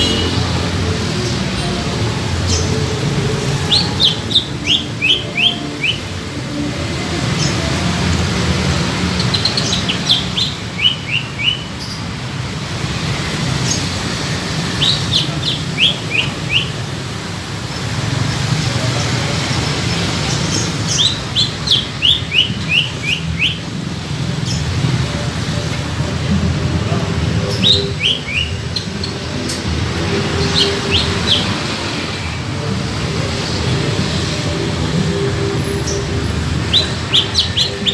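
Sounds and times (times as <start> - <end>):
bird singing whistled notes: 3.6 - 6.0, 9.3 - 12.0, 14.8 - 16.8, 20.9 - 23.6, 27.5 - 28.9, 30.4 - 31.5, 36.7 - 37.9.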